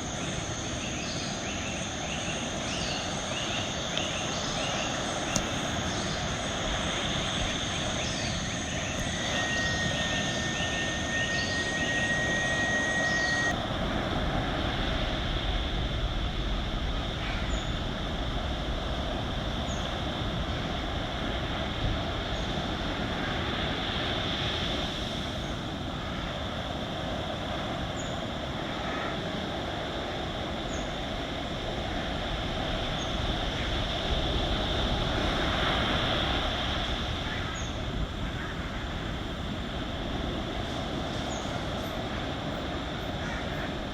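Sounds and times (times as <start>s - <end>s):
insects trilling: 0.0s - 13.6s, 27.8s - 43.9s
thin steady tone: 0.0s - 13.6s
steady low rush: 0.0s - 22.9s.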